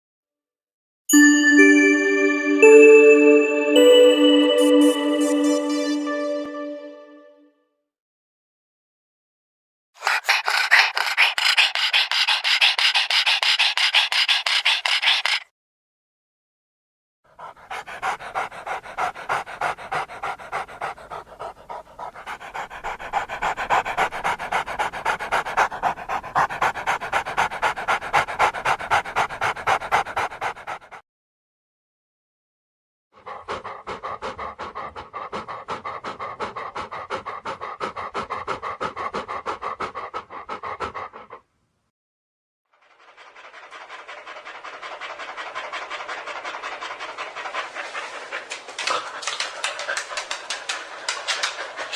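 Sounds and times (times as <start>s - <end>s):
dog panting: 10.0s - 15.4s, 17.3s - 31.0s, 33.2s - 41.5s, 42.8s - 51.9s.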